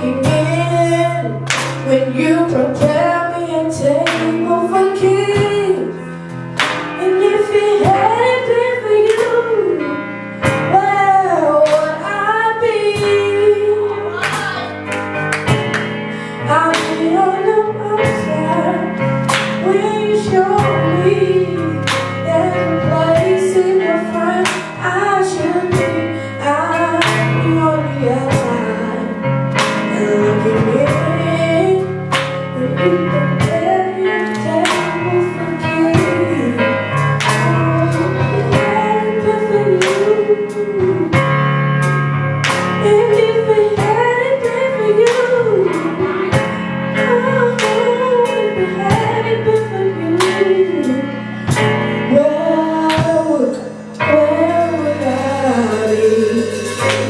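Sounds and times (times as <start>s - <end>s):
drums keeping a beat: 0.0s - 9.8s, 10.4s - 57.0s
bass line: 0.0s - 57.0s
person singing a melody: 29.8s - 41.4s, 42.8s - 57.0s.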